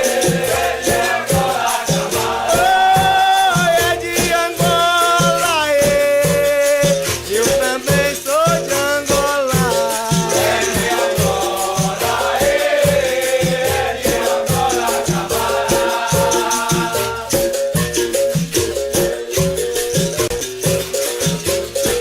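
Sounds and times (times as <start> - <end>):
shaken rattling percussion: 0.0 - 22.0
steady drum beat: 0.0 - 22.0
person singing: 2.4 - 13.0.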